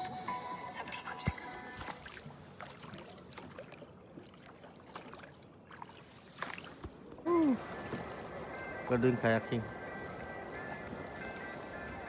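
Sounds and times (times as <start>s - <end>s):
water sloshing: 0.7s - 8.3s
paddle splashes: 1.0s - 8.4s.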